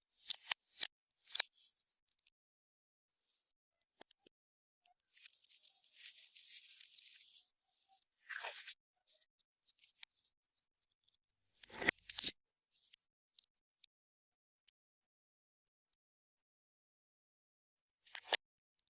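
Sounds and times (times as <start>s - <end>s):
small clicks and pops: 0.2s - 2.4s, 17.9s - 18.9s.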